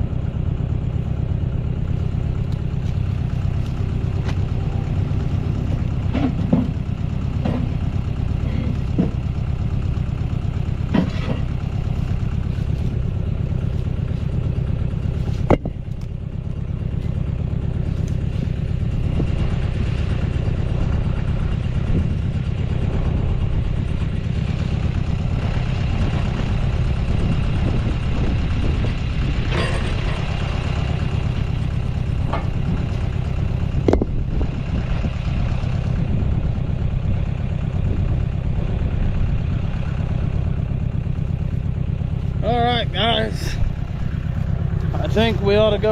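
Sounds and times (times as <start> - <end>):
tractor engine running: 0.0 - 45.9
metal clanks and knocks: 2.5 - 16.2, 29.4 - 34.2.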